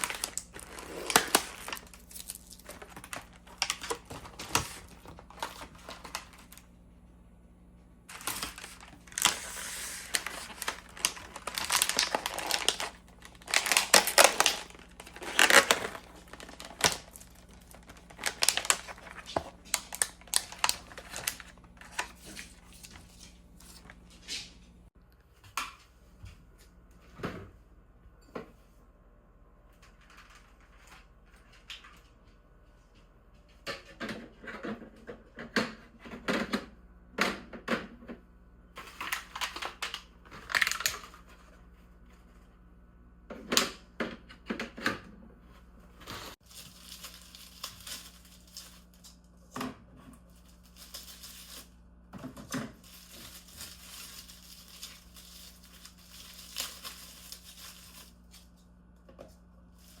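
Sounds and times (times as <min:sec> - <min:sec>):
paper crinkling and tearing: 0:00.0 - 0:06.6, 0:08.1 - 0:24.5, 0:46.3 - 0:49.2, 0:50.2 - 0:51.8, 0:52.8 - 0:58.6.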